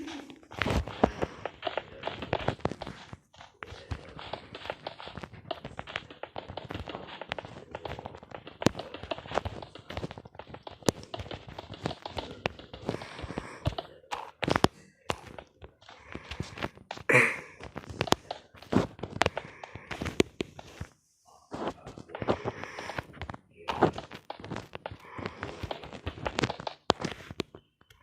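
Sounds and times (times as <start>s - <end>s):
taps clicks and knocks: 0.0s - 20.9s, 21.5s - 28.0s.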